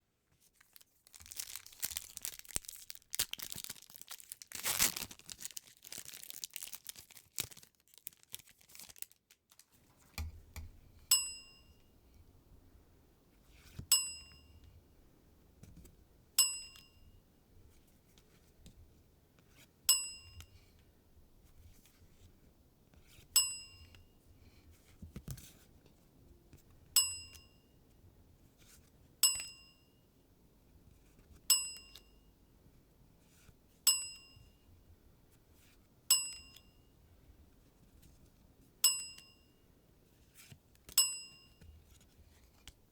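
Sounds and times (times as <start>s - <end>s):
foil wrapper crinkling: 0.4s - 9.8s
foil wrapper ripping: 0.6s - 9.8s
bell-like ding: 11.1s - 11.9s, 13.9s - 14.6s, 16.4s - 17.2s, 23.4s - 23.9s, 27.0s - 27.7s, 33.9s - 34.6s, 38.8s - 39.6s, 41.0s - 41.6s.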